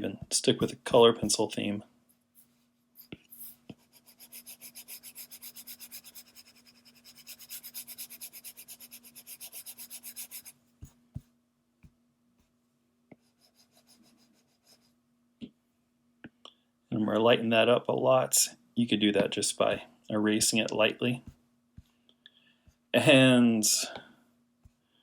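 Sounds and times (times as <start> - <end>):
pencil shading on paper: 3.0 - 10.6.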